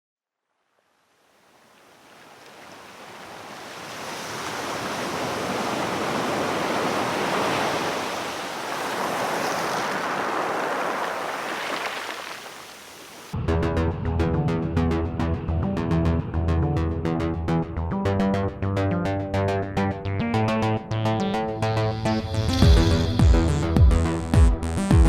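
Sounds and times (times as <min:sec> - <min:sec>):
rushing water: 0:01.1 - 0:13.4.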